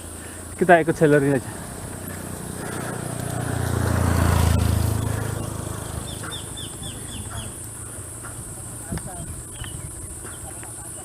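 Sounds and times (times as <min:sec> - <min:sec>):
small engine passing by: 0:00.0 - 0:10.3
high insect drone: 0:00.0 - 0:11.0
bird chirping: 0:01.6 - 0:11.0.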